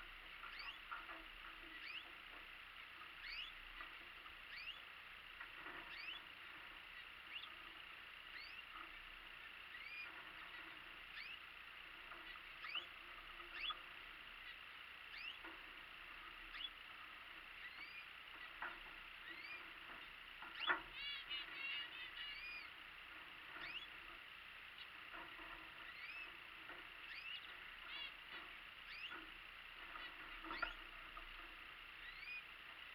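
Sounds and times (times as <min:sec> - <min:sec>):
finches chirping: 0:00.0 - 0:32.9.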